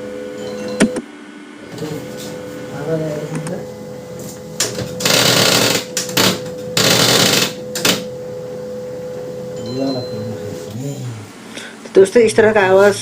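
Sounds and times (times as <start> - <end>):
printer humming: 0.0 - 13.0
mechanical grinding rattles: 4.6 - 8.1.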